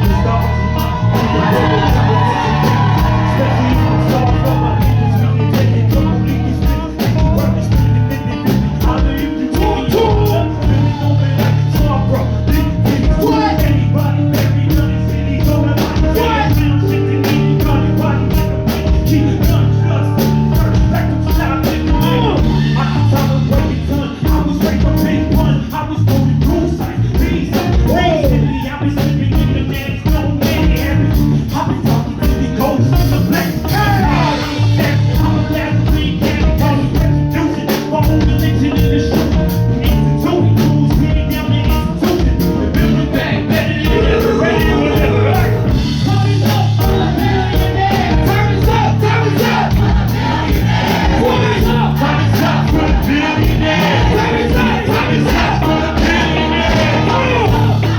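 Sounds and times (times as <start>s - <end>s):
live band music: 0.0s - 57.9s
person singing or rapping: 0.0s - 57.9s.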